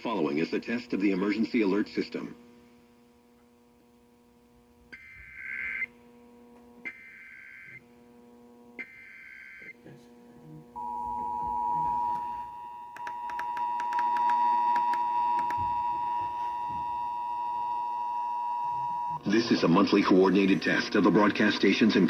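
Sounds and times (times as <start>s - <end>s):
two-tone attention signal: 10.8s - 19.2s
sharp clicks: 13.0s - 15.6s.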